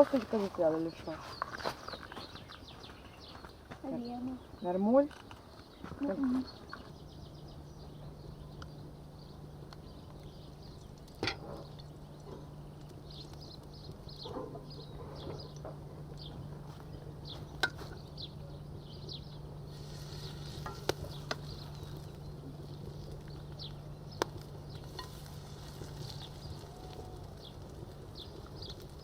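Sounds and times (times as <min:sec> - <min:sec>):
fish patties sizzling in oil: 0:19.7 - 0:23.5, 0:24.2 - 0:29.0.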